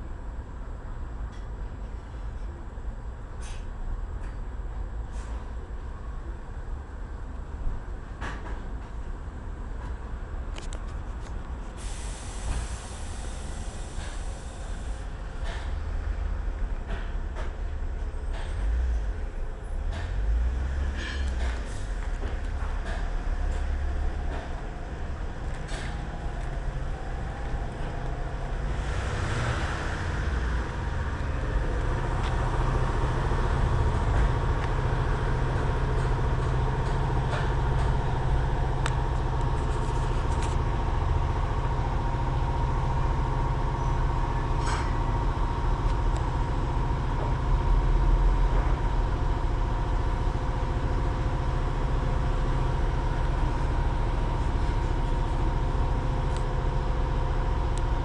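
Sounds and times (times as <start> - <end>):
compressor low rumble: 11.8 - 58.0.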